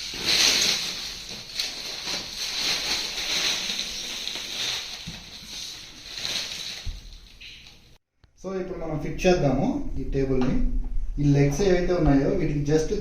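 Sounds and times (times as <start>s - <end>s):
packaging rustling and scraping: 0.0s - 8.0s.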